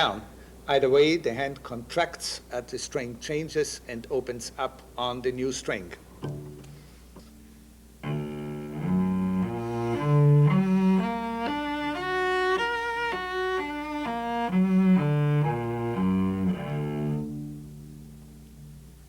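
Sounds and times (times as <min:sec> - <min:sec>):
cello bowed arpeggio: 0:08.0 - 0:18.0.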